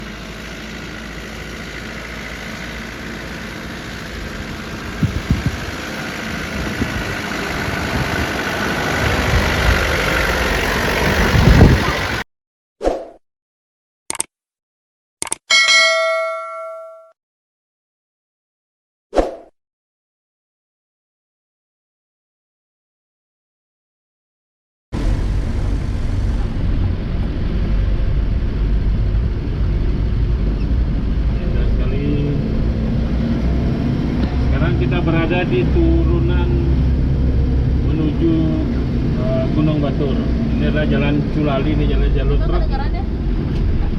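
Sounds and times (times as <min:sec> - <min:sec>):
four-wheel-drive engine running: 0:00.0 - 0:12.2, 0:25.0 - 0:43.9
heavy low thumps: 0:04.9 - 0:05.8.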